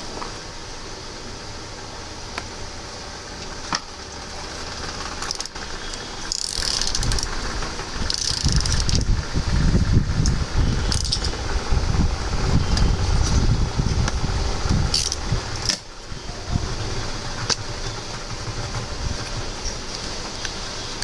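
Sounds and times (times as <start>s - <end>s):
steady low hum: 0.0s - 21.0s
sharp clicks: 5.0s - 9.2s, 10.2s - 11.4s
irregular knocks and rumbles: 16.5s - 20.6s.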